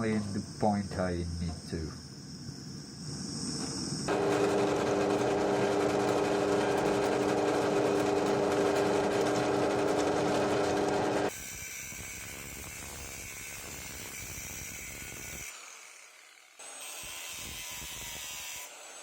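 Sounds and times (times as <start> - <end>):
crickets chirping: 0.0 - 4.1
power tool motor running: 4.1 - 11.4.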